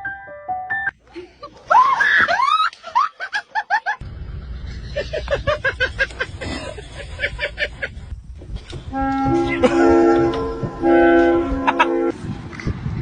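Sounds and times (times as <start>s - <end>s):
background noise: 0.0s - 13.0s
person laughing: 1.1s - 8.0s, 9.4s - 10.4s, 11.5s - 12.1s.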